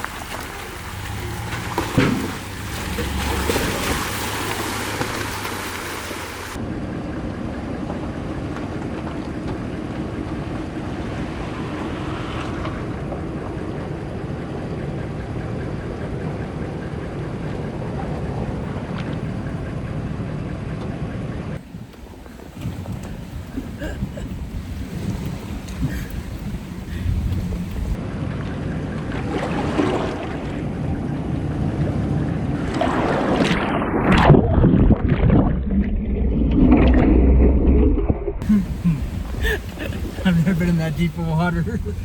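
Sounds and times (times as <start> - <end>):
water splashing against truck: 0.0 - 6.6, 7.7 - 42.0
truck engine running: 0.0 - 29.5, 30.4 - 32.7, 38.4 - 42.0
wind noise: 21.6 - 42.0.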